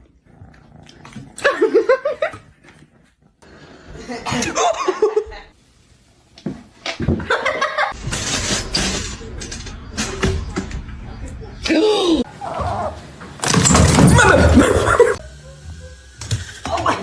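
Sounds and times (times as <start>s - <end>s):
person laughing: 14.3s - 15.2s.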